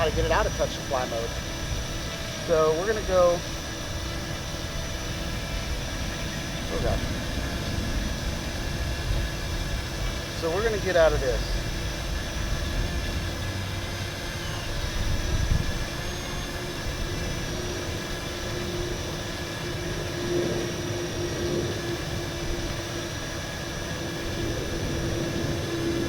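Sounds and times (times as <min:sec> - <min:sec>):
drone propellers whining: 0:00.0 - 0:26.0
low rumble: 0:05.0 - 0:13.7.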